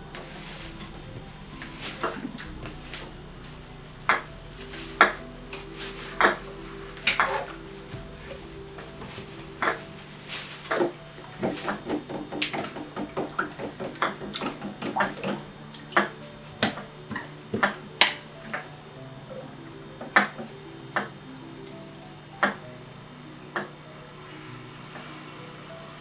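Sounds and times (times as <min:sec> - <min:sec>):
droning music tone: 0:00.0 - 0:26.0.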